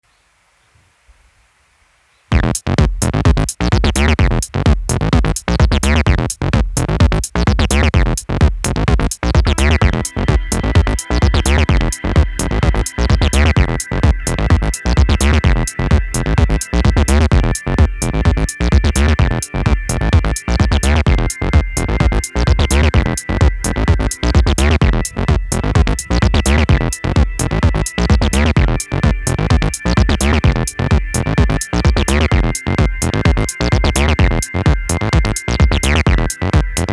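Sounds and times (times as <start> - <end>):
drum machine beat: 2.3 - 36.9
synth bass: 2.3 - 36.9
held high synth notes: 9.4 - 36.9.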